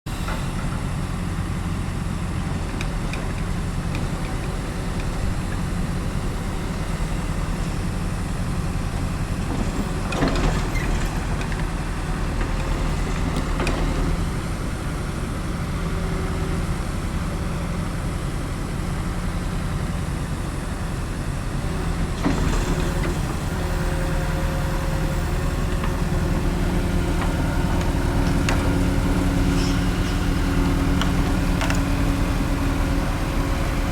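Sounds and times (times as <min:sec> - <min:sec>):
heavy machinery humming: 0:19.6 - 0:33.9.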